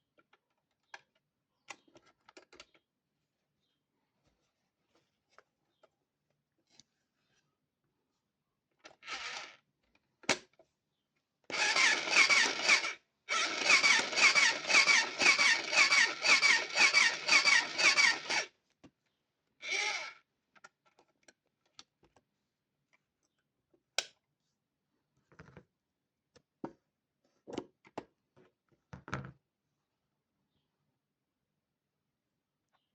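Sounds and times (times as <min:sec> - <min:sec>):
toy sewing machine whirring: 0:09.0 - 0:09.6, 0:11.5 - 0:18.5, 0:19.6 - 0:20.2.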